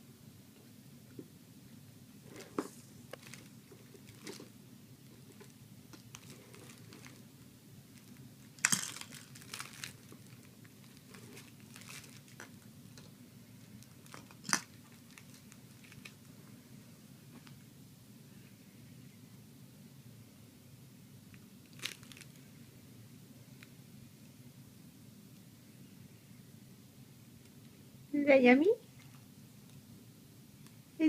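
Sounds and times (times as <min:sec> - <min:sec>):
toy ball crinkling and clicking: 0:08.0 - 0:12.6.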